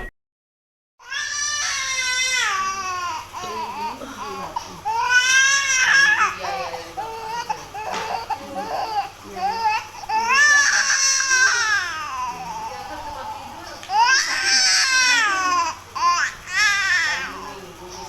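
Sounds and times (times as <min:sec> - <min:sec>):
baby crying: 0:01.0 - 0:17.5.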